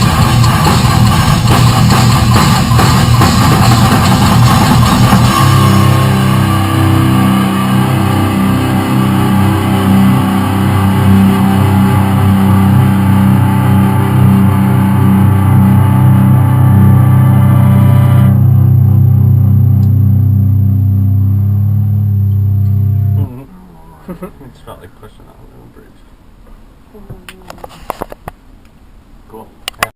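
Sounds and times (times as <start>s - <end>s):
heavy rock electric guitar: 0.0s - 23.3s.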